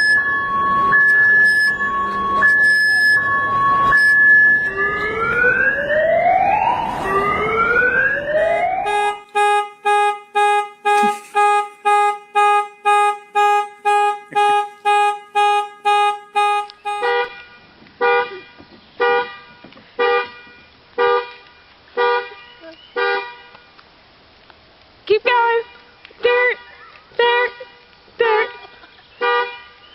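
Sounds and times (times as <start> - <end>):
car alarm siren: 0.0 - 17.3.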